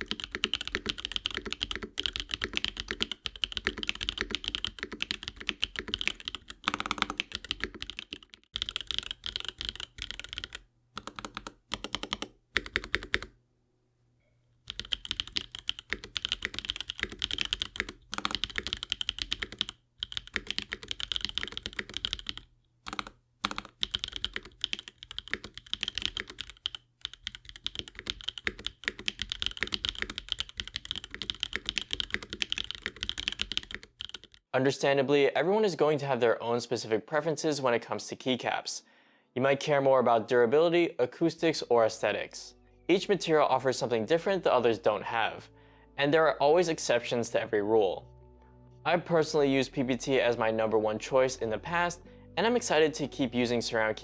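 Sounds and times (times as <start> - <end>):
mechanical keyboard typing: 0.0 - 13.3, 14.7 - 34.4.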